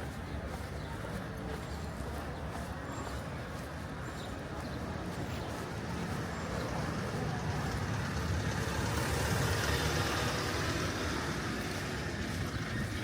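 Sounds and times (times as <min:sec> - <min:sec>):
vehicle passing: 0:04.8 - 0:13.0.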